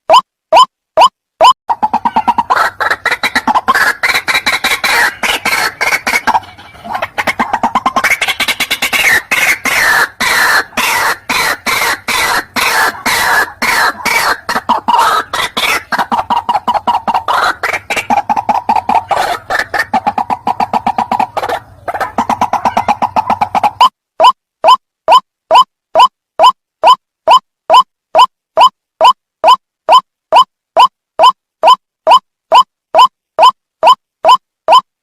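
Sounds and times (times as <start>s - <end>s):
waterhen calls: 1.7s - 23.9s.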